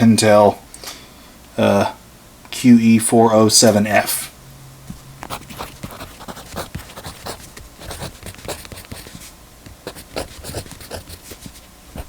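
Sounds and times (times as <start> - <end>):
pencil writing on paper: 5.2 - 12.0.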